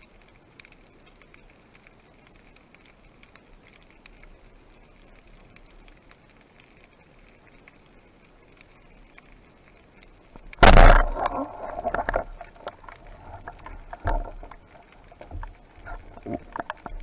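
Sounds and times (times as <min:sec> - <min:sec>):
crackling and clicks: 0:10.4 - 0:17.0
sudden loud burst: 0:10.6 - 0:14.6.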